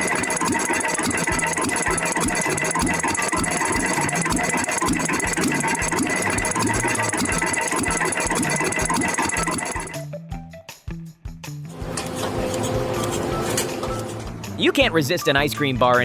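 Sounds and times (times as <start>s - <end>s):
machine rattling and whining: 0.0s - 10.0s.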